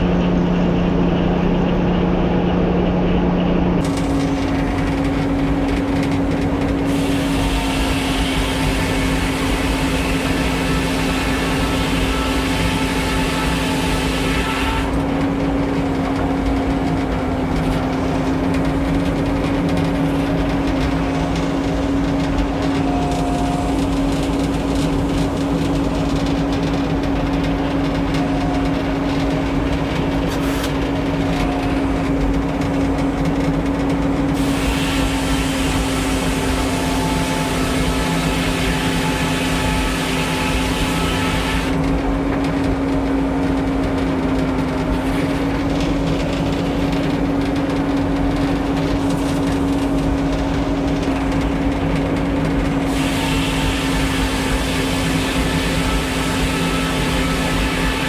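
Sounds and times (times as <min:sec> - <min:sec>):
sawmill power unit humming: 0:00.0 - 0:58.0
saw cutting through log: 0:03.8 - 0:26.1, 0:34.4 - 0:42.0, 0:52.8 - 0:58.0.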